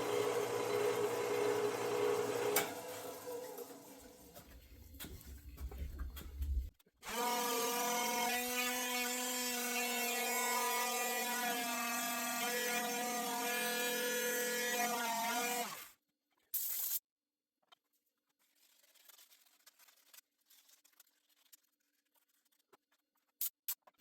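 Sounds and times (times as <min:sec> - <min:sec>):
small electric power tool running: 0:00.0 - 0:04.0, 0:07.0 - 0:15.9.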